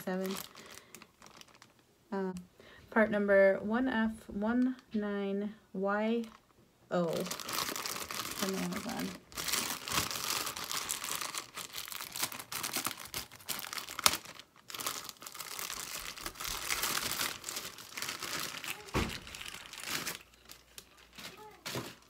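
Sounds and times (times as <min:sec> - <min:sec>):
packaging crinkling: 0:00.0 - 0:01.9, 0:06.2 - 0:22.0.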